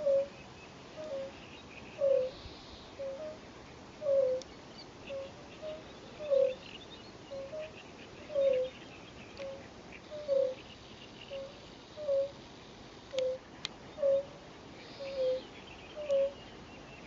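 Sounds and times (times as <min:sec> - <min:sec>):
toads calling: 0:00.0 - 0:12.4, 0:13.1 - 0:16.9
faint high chirps: 0:14.0 - 0:17.0.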